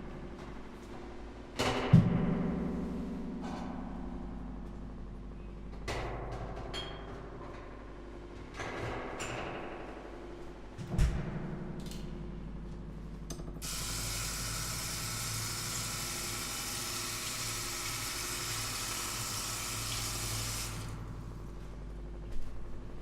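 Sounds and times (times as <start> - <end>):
low steady hum: 11.5 - 23.0
tap water running into sink: 13.6 - 21.0.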